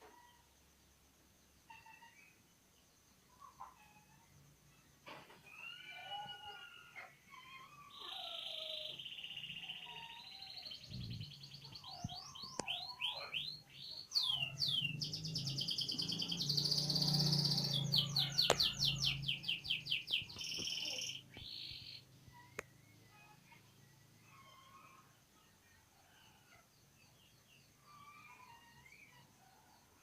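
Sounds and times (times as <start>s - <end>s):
canary singing: 5.5s - 25.0s.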